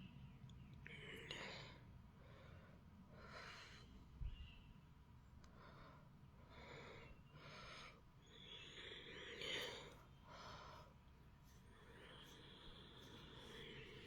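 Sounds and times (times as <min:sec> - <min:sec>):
soft breathing: 0:05.4 - 0:14.0.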